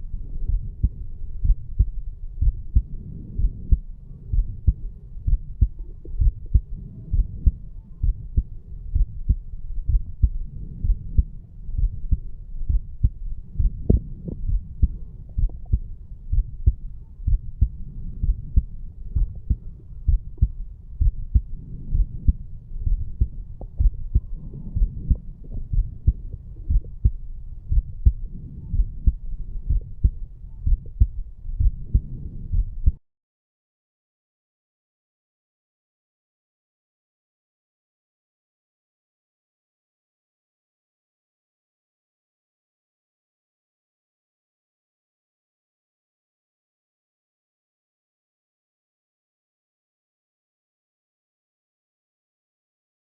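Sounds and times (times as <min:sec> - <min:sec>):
heartbeat lub-dub: 0:00.0 - 0:33.0.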